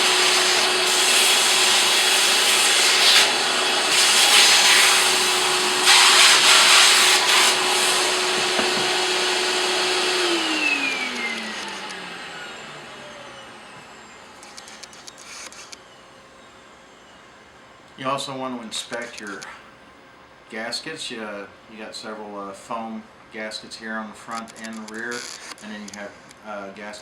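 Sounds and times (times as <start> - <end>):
vacuum motor winding down: 0.0 - 15.7
vacuum cleaner running: 0.0 - 17.5.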